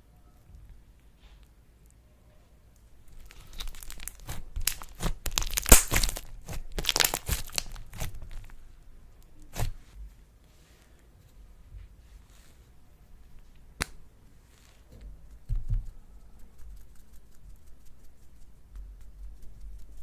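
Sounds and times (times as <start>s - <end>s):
slime crackling and popping: 3.1s - 8.6s, 9.4s - 9.8s.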